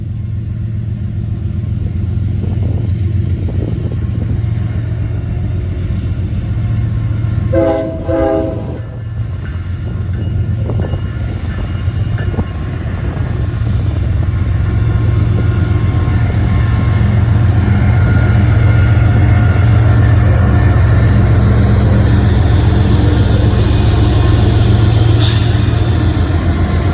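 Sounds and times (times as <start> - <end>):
diesel locomotive rumble: 0.0 - 26.9
locomotive air horn blasts: 7.5 - 9.0.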